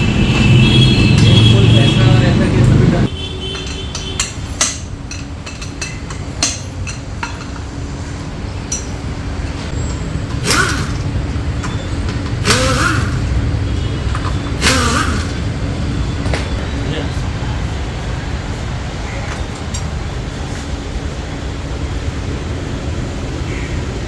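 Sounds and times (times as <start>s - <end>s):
pneumatic tool bursts: 10.3s - 11.7s, 12.4s - 13.4s, 14.1s - 15.5s.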